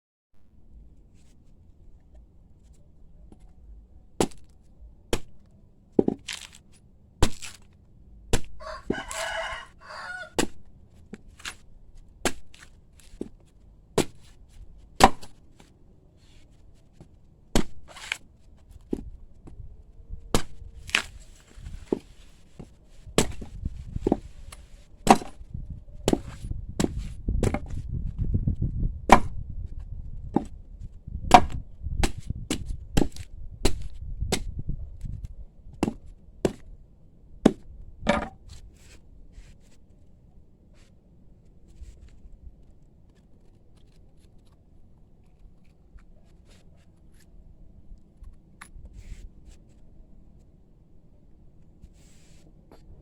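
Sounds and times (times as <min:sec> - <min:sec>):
blade chopping into coconut: 0:04.2 - 0:04.5, 0:07.2 - 0:07.6, 0:08.3 - 0:09.3, 0:10.4 - 0:10.6, 0:12.2 - 0:12.7, 0:14.0 - 0:14.2, 0:17.6 - 0:18.2, 0:20.4 - 0:21.1, 0:25.1 - 0:25.4, 0:29.1 - 0:29.3, 0:31.3 - 0:34.5
rooster crowing: 0:08.6 - 0:10.4.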